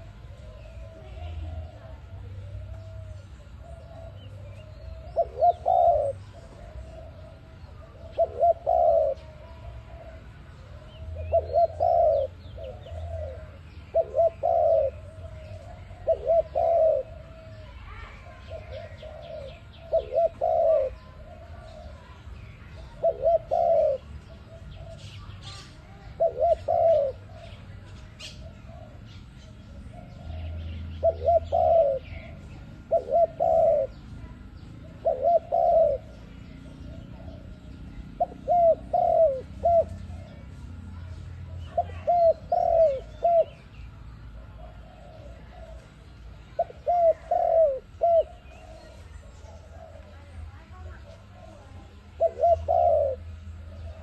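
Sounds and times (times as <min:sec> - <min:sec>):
dove cooing: 0:00.0 - 0:54.0
small birds chirping: 0:00.0 - 0:54.0.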